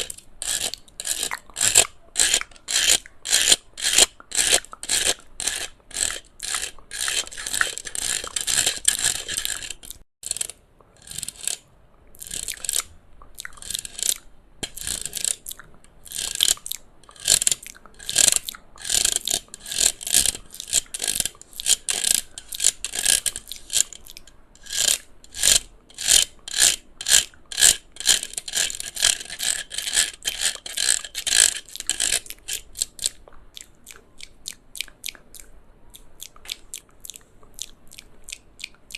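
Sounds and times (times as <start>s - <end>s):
scratching on plastic fan casing: 0.0s - 11.5s, 16.2s - 33.0s.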